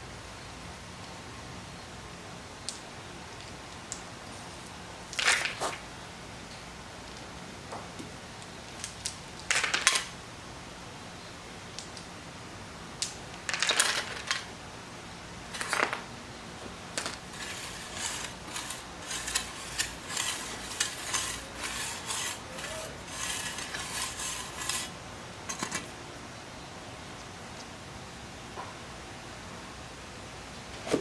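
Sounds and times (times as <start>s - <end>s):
small hard objects clattering: 17.0s - 25.9s.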